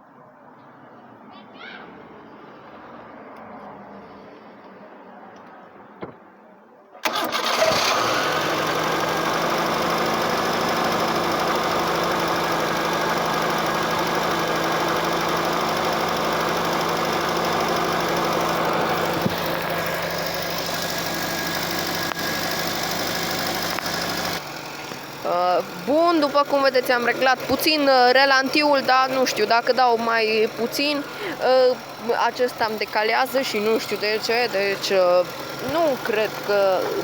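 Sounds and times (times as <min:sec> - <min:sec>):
car engine starting and idling: 0:07.0 - 0:37.0.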